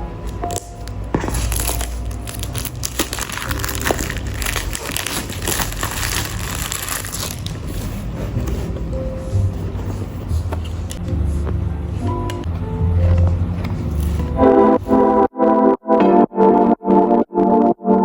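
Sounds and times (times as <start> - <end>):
plastic packaging crinkling: 0.3 - 8.2.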